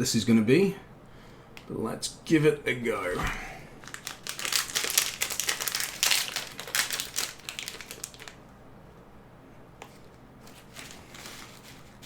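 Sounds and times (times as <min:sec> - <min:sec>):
plastic snack packet crinkling: 0:03.8 - 0:08.5, 0:10.4 - 0:12.0.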